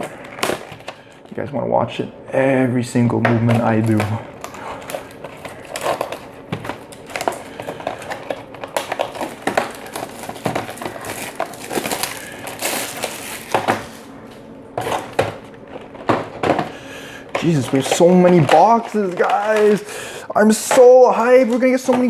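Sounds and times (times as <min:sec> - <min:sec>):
plastic shrink-wrap crinkling: 0:03.5 - 0:16.0, 0:17.4 - 0:19.9.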